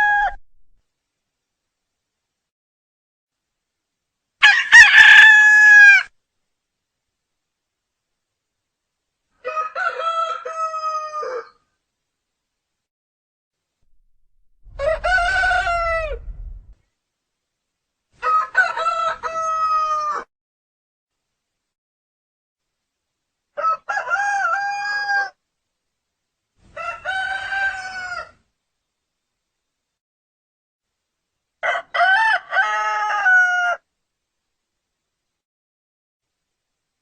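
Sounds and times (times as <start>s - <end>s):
rooster crowing: 0.0s - 0.4s, 4.4s - 6.1s, 9.4s - 11.6s, 14.6s - 16.6s, 18.2s - 20.3s, 23.6s - 25.4s, 26.8s - 28.4s, 31.6s - 33.8s.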